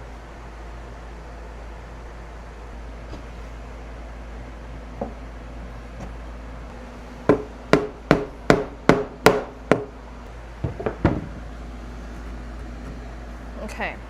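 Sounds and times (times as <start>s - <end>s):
hammer striking wood: 7.3s - 10.0s.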